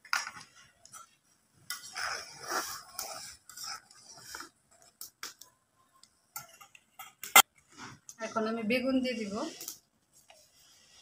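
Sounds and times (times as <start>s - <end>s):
spoon scraping pot: 1.7s - 4.6s.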